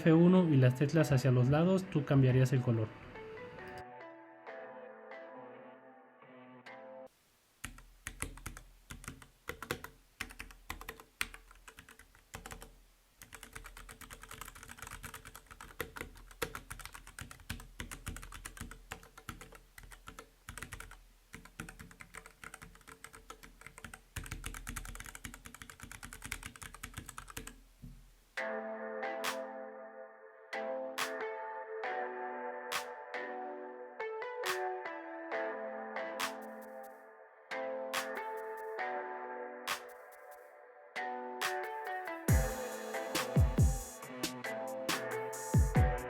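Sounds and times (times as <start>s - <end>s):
mechanical keyboard typing: 7.6s - 27.6s.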